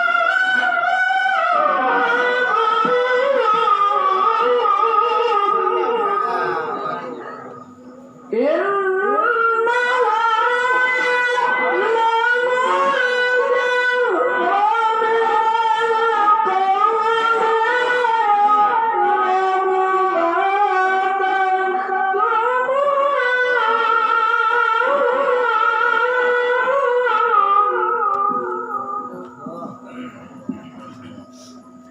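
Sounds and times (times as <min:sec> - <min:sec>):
man reciting melodically: 0:00.0 - 0:07.2, 0:08.4 - 0:31.8.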